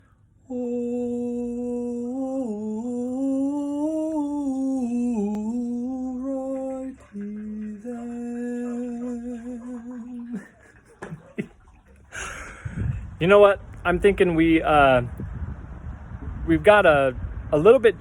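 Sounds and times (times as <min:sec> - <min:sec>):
person humming: 0:00.5 - 0:10.5.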